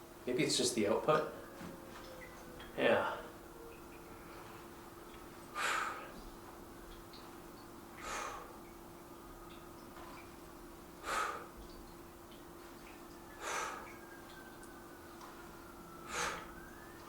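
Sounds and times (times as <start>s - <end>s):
steady low hum: 0.0s - 17.0s
man exhaling hard through nose: 16.1s - 16.6s.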